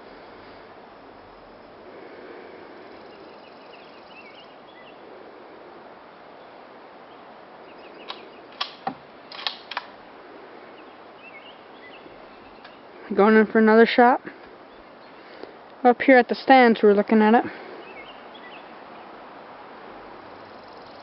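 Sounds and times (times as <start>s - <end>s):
steady outdoor noise: 0.0s - 21.0s
sharp clicks and knocks: 8.1s - 9.9s.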